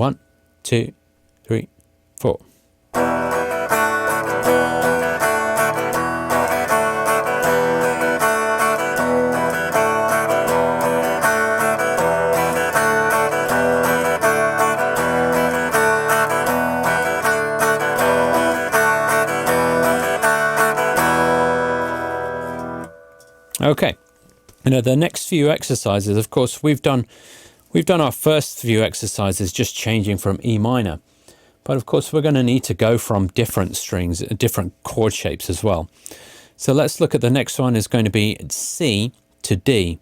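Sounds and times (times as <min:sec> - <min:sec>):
guitar strumming: 0:02.9 - 0:24.6.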